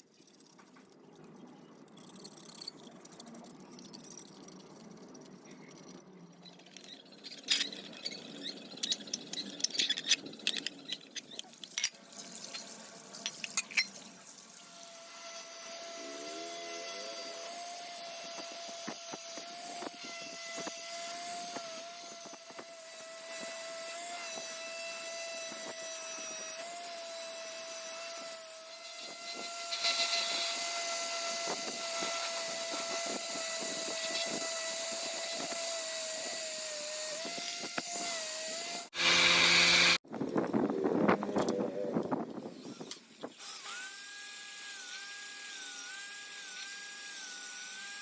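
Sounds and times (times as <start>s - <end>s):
scraping and clicking: 0.2s - 14.0s
power tool motor whine: 14.7s - 40.0s.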